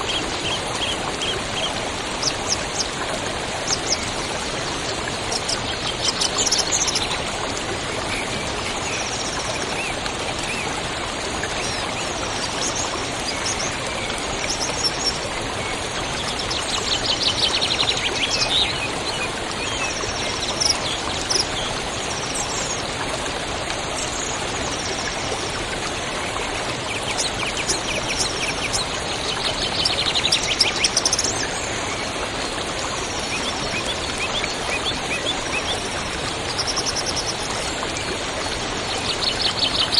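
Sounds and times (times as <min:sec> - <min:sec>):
birds singing: 0:00.0 - 0:02.9, 0:11.4 - 0:22.8, 0:26.3 - 0:39.9
waterfall rushing: 0:00.0 - 0:39.9.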